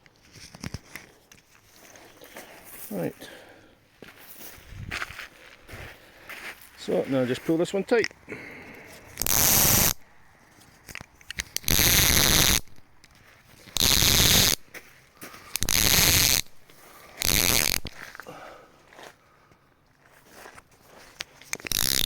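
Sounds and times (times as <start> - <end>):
ratchet pulley rattling: 9.2 - 10.0, 11.3 - 12.7, 13.8 - 14.6, 15.5 - 16.5, 17.2 - 17.9, 21.5 - 22.0.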